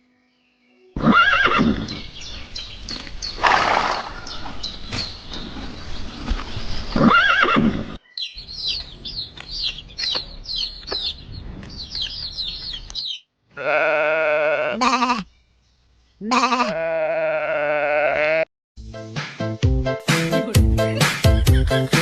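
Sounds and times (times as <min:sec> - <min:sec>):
small birds chirping: 0:00.4 - 0:13.7, 0:14.9 - 0:16.3
horse whinnying: 0:01.0 - 0:02.0, 0:07.0 - 0:08.0, 0:13.6 - 0:15.2
sheep or goat bleating: 0:13.6 - 0:15.3, 0:16.2 - 0:18.5.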